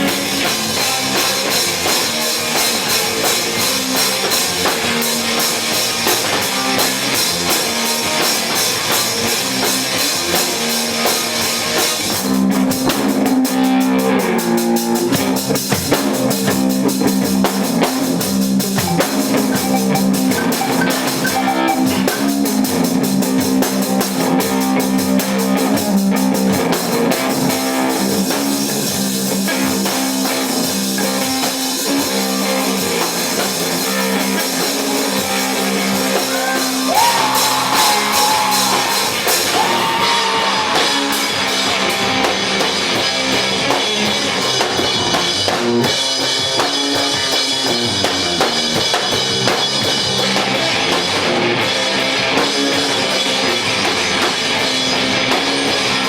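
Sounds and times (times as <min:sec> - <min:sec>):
rock band playing: 0:00.0 - 0:56.0
fast cymbal playing: 0:17.0 - 0:24.3, 0:27.2 - 0:43.3
electric guitar notes: 0:18.7 - 0:23.4, 0:35.2 - 0:44.4.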